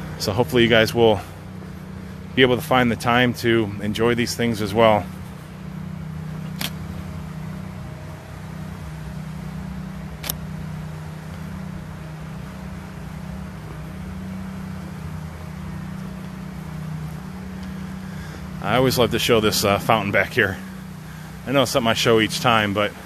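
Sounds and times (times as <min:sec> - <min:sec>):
low mechanical hum: 0:00.0 - 0:23.0
sharp click: 0:06.5 - 0:06.8, 0:10.2 - 0:10.5.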